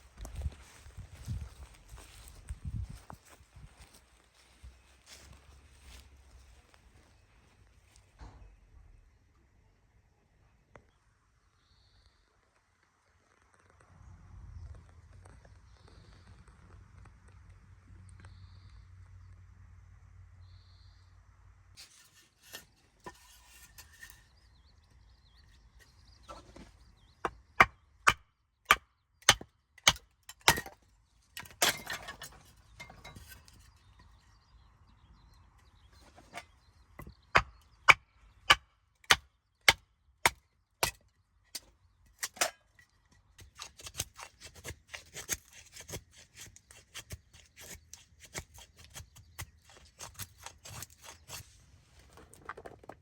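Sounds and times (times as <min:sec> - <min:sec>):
rough scraping: 0:21.8 - 0:24.7, 0:25.6 - 0:27.0, 0:31.4 - 0:34.2, 0:36.0 - 0:37.6, 0:43.4 - 0:53.0.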